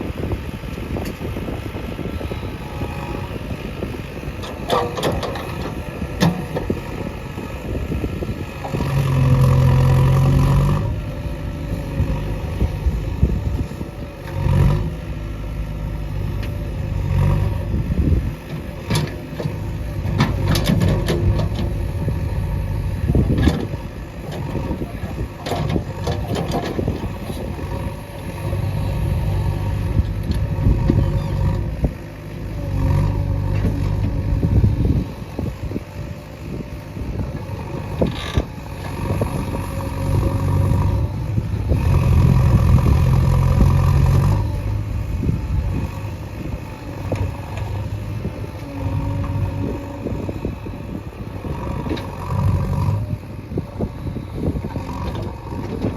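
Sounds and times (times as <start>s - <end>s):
diesel engine working under load: 0.0s - 55.9s.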